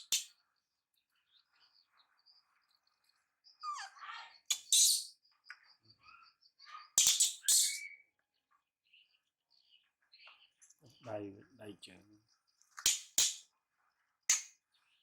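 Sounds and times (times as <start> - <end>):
small animal chirping squeaks: 3.5 - 8.1.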